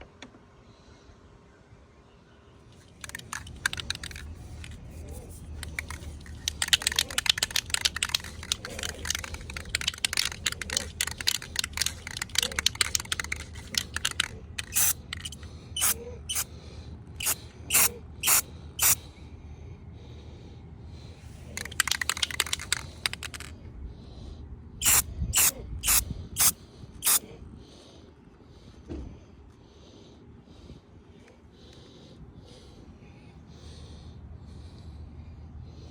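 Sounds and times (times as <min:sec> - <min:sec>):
spray can shaking rattle: 0:02.8 - 0:16.4, 0:17.2 - 0:19.0, 0:21.5 - 0:23.5, 0:24.8 - 0:27.2
spray paint bursts: 0:03.0 - 0:16.5, 0:17.2 - 0:19.0, 0:24.8 - 0:27.2.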